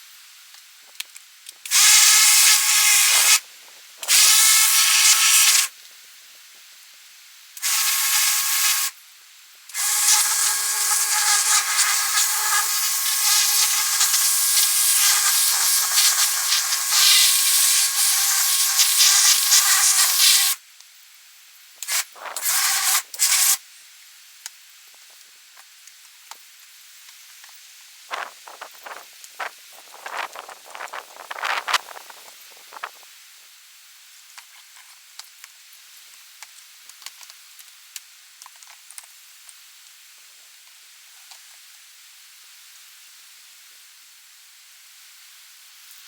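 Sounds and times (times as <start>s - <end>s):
pressure washer water jet hiss: 1.7s - 5.7s, 7.6s - 9.0s, 9.7s - 20.6s, 21.8s - 23.6s.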